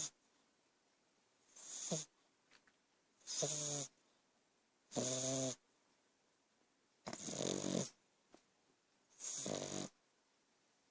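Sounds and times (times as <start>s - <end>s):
pet snoring: 1.6s - 2.1s, 3.2s - 4.0s, 4.9s - 5.6s, 7.0s - 8.0s, 9.1s - 10.0s.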